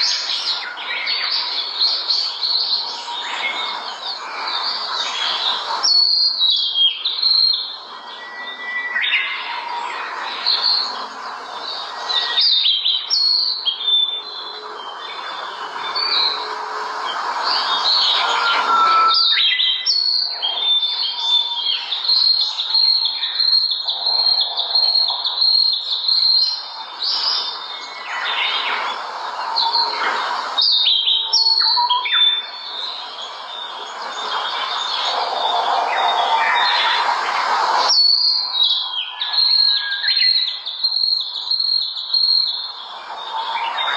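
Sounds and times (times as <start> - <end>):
steady background hiss: 0.0 - 31.7
songbirds chirping and singing: 0.0 - 43.9.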